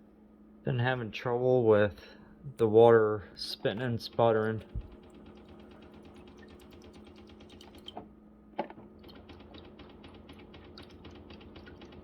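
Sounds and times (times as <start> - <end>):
steady hum: 0.0 - 8.5
water dispenser sputtering: 3.7 - 8.1, 9.0 - 12.0.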